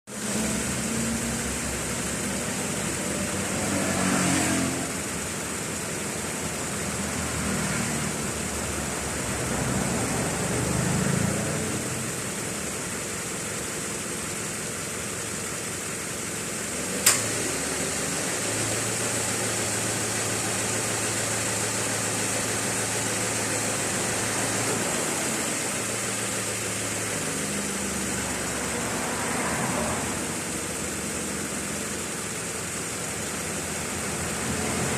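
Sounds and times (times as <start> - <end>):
car engine idling: 0.1 - 3.8, 4.8 - 34.9
compressor click: 17.0 - 17.3.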